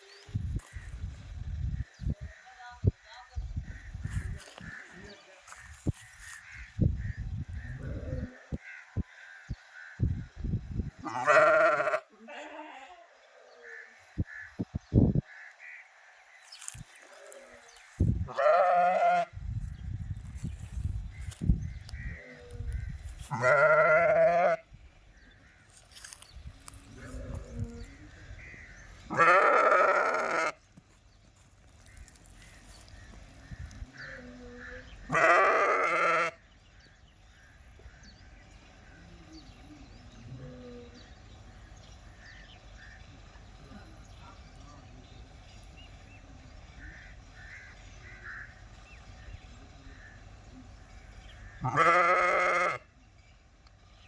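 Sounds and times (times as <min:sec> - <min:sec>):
sheep bleating: 0:11.0 - 0:13.1, 0:18.3 - 0:19.3, 0:23.2 - 0:24.6, 0:29.1 - 0:30.6, 0:34.0 - 0:36.4, 0:51.6 - 0:52.9.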